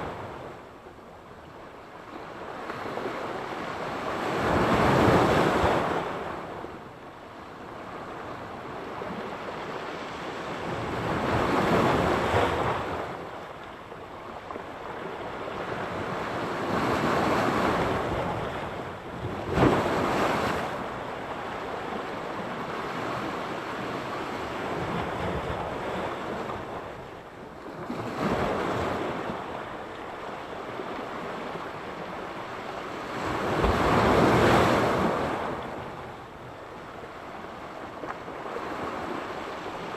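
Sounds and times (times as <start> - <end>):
waves breaking on shore: 7.8 - 39.9.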